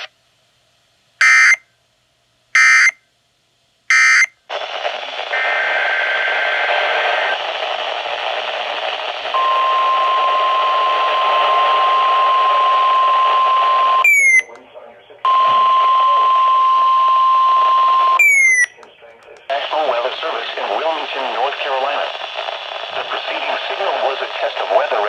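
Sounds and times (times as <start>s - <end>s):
receiver static hiss: 0.0s - 25.0s
steady alarm tone: 1.2s - 1.6s, 2.6s - 3.0s, 3.9s - 4.3s, 15.3s - 18.7s
digital data tone bursts: 14.0s - 14.5s, 18.2s - 18.8s.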